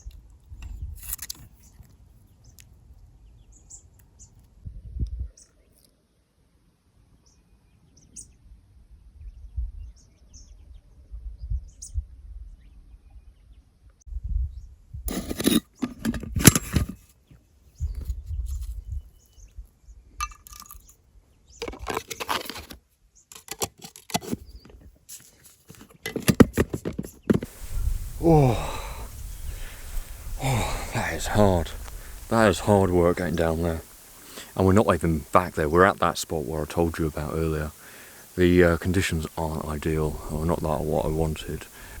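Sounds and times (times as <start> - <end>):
boots scrabbling on loose shale: 27.4 - 42.0
person exhaling with effort: 27.5 - 35.7, 37.6 - 38.4, 41.2 - 42.0.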